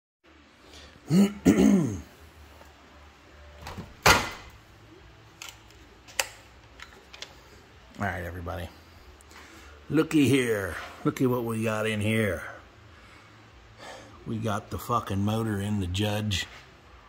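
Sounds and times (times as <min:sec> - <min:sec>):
man clearing throat: 0:01.0 - 0:02.1.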